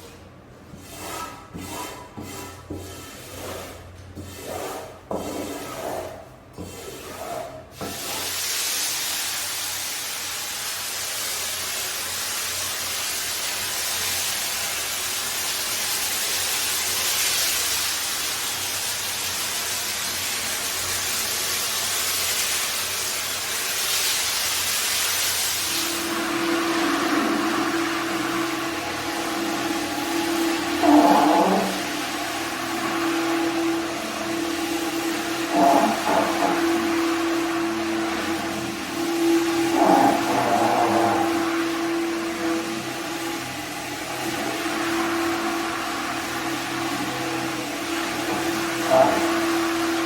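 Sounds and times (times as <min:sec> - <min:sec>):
brush scrubbing wet carpet: 0:00.8 - 0:08.4, 0:28.7 - 0:41.9
carpet-washing equipment hiss: 0:07.8 - 0:50.0.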